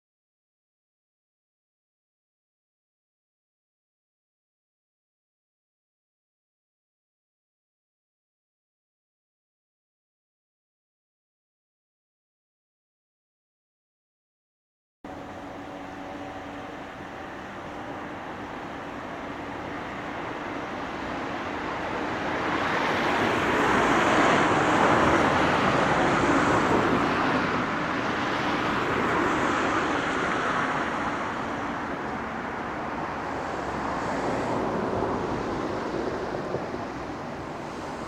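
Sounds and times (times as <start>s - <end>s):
vehicle passing: 15.1s - 38.0s.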